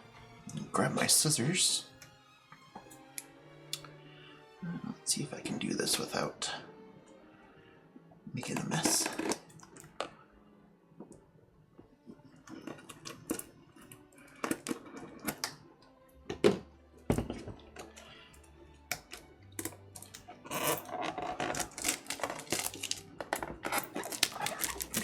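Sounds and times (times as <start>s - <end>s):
handling clicks and knocks: 14.3s - 15.6s, 16.3s - 18.0s, 18.9s - 25.0s
scissors cutting plastic wrap: 19.6s - 25.0s
plastic crinkling: 20.0s - 25.0s.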